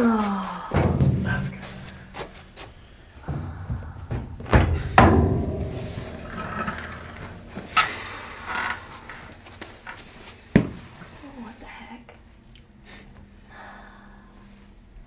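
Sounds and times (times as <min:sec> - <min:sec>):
spine cracking knocks: 0:00.8 - 0:11.1.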